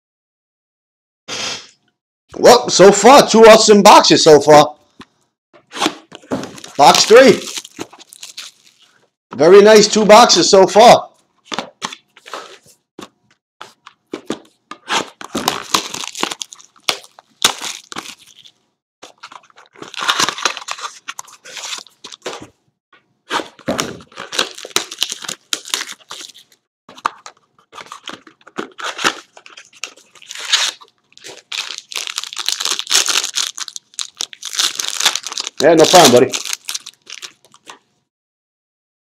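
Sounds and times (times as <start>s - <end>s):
plastic wrapping tearing and crinkling: 5.8s - 9.2s, 14.9s - 22.5s, 23.3s - 37.8s.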